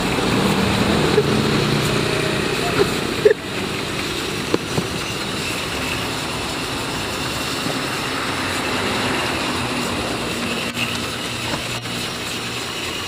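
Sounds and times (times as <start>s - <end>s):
pressure washer motor hum: 0.0s - 13.0s
water spray hiss: 0.0s - 13.0s.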